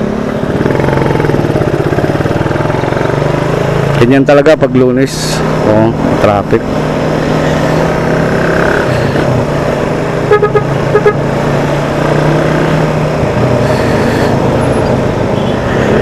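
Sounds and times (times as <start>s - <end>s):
motorcycle engine running: 0.0s - 16.0s
road noise: 0.0s - 16.0s
vehicle horn toots: 10.3s - 11.2s.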